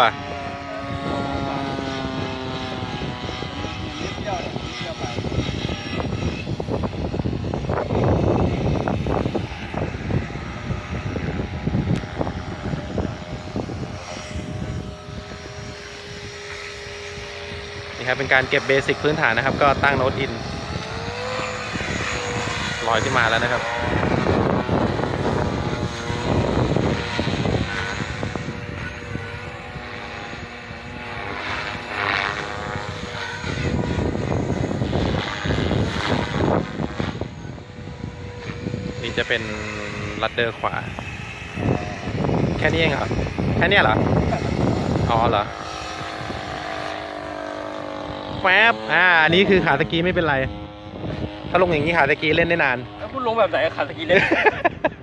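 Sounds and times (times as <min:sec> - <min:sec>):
rc helicopter rotor hum: 0:00.0 - 0:55.0
wind buffeting microphone: 0:00.0 - 0:55.0.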